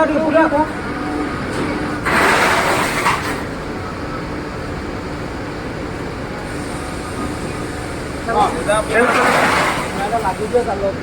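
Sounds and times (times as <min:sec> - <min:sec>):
loud rushing hiss: 0:06.1 - 0:10.9.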